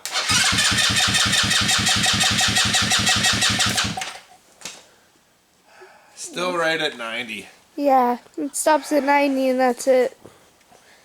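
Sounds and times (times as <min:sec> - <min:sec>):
engine cranking by starter: 0:00.0 - 0:04.3.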